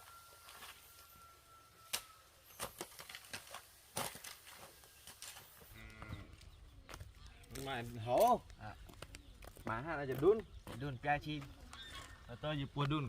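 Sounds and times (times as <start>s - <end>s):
faint steady high tone: 0.0s - 2.8s.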